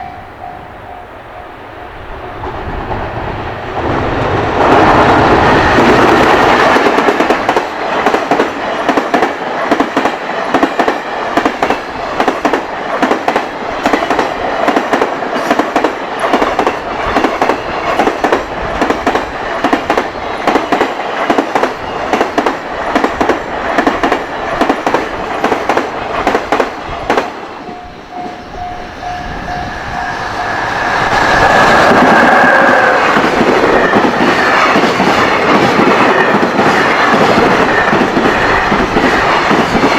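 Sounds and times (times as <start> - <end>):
level-crossing warning bell: 0.0 - 2.2, 27.4 - 34.9
train whine: 0.0 - 39.9
train wheels clattering on rails: 2.4 - 39.9.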